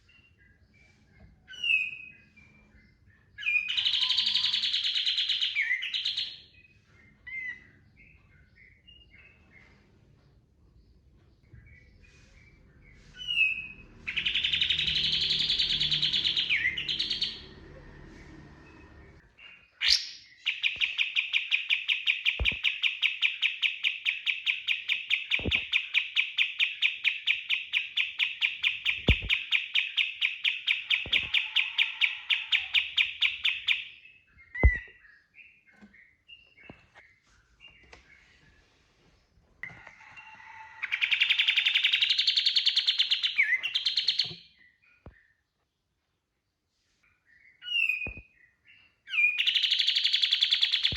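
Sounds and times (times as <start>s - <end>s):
songbird singing rapid notes: 13.2s - 17.4s, 41.0s - 45.2s, 47.6s - 50.9s.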